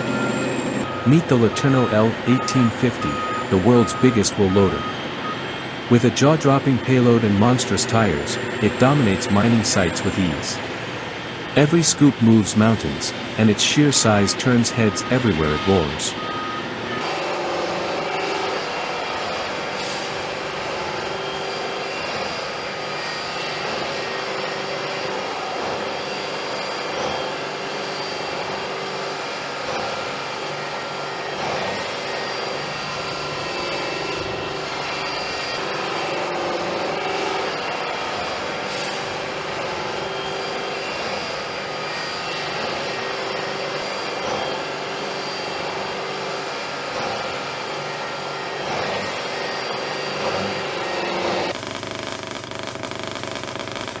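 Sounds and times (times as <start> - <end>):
heavy machine drone: 0.0 - 54.0
faint high whine: 11.6 - 54.0.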